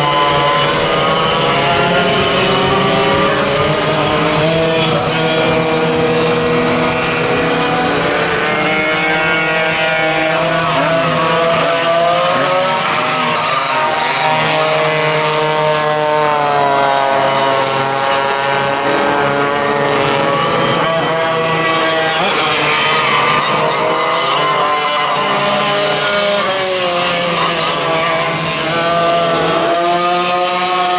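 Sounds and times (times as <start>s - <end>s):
racing kart engines revving: 0.0s - 30.9s.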